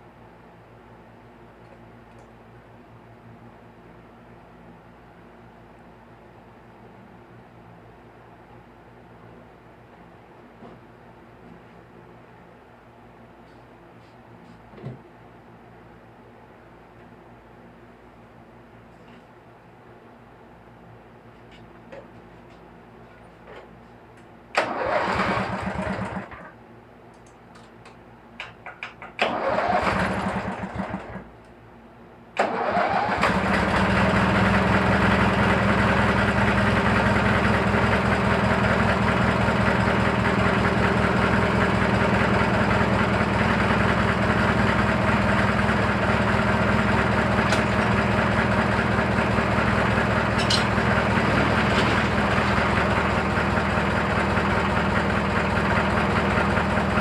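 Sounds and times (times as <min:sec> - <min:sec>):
engine starter cranking: 0:24.6 - 0:26.4, 0:29.2 - 0:31.1, 0:32.4 - 0:33.8.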